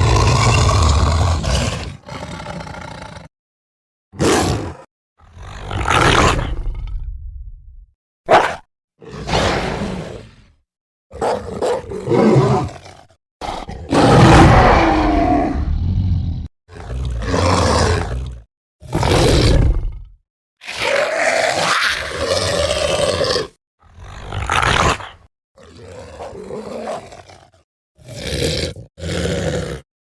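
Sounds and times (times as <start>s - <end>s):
creature roaring cries: 13.4s - 16.1s, 18.8s - 25.2s.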